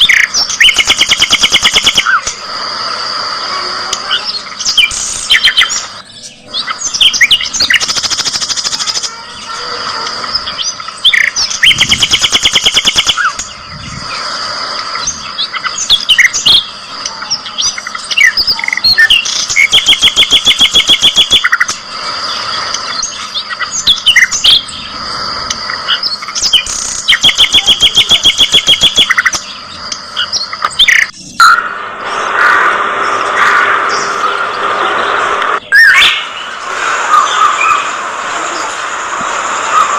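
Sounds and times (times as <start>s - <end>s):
budgerigars chirping: 0.0s - 2.2s, 10.2s - 14.4s.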